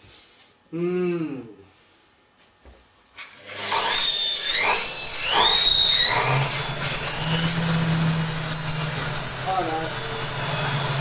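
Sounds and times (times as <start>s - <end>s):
washing machine motor whine: 3.2s - 11.0s.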